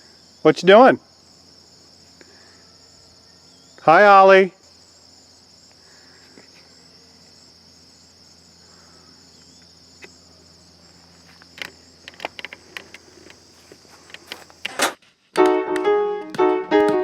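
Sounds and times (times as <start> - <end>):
insects chorus: 0.0 - 15.3
sharp clicks and knocks: 11.4 - 13.4.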